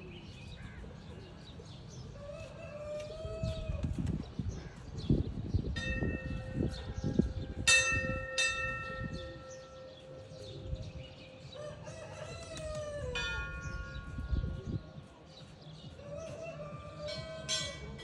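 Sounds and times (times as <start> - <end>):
ringing bell-like tones: 5.8 - 6.9, 7.6 - 11.0, 13.1 - 14.6, 17.1 - 18.0.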